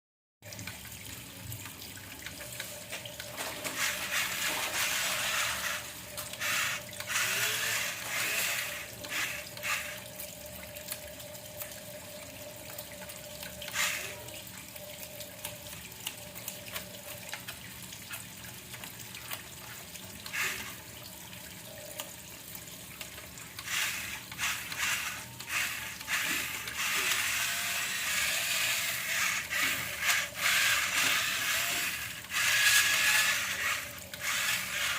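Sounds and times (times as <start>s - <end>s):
faint electric motor whine: 3.7s - 10.1s, 23.6s - 34.9s.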